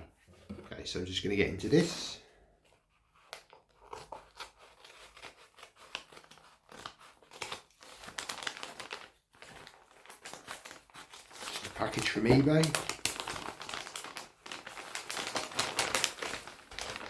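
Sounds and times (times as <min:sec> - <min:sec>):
packaging crinkling and tearing: 0:03.4 - 0:17.0.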